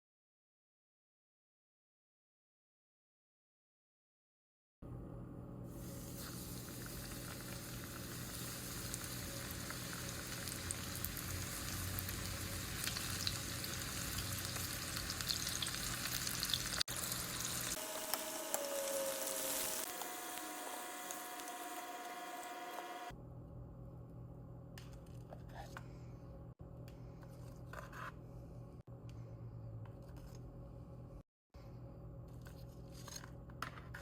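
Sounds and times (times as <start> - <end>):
food frying in hot oil: 5.8 - 22.7.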